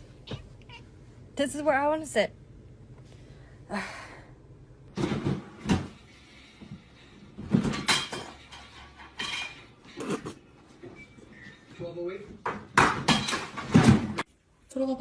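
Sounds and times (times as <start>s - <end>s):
knocks and clattering thumps: 4.9s - 11.0s, 12.3s - 14.3s.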